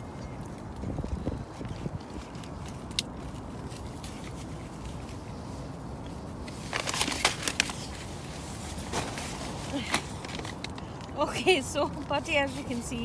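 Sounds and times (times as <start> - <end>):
strong wind rumbling: 0.0 - 2.7
clicks and rustles: 0.1 - 11.2.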